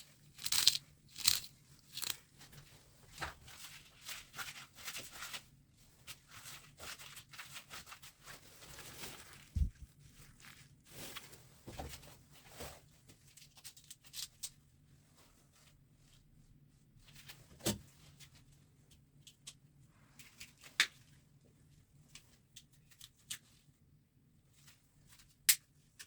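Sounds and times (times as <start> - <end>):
small clicks and rustling: 0.4 - 5.5, 22.0 - 23.7.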